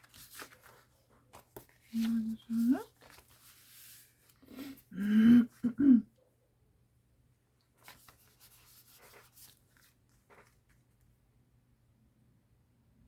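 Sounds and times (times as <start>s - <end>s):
paper crinkling and rustling: 0.0s - 4.8s, 7.7s - 11.1s.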